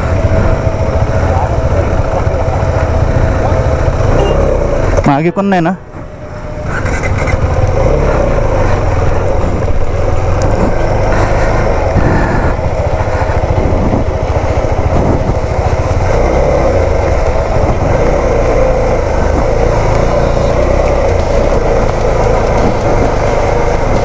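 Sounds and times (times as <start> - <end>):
wind rumbling over microphone: 0.0 - 5.1, 5.8 - 24.0
motorcycle engine running: 0.0 - 24.0.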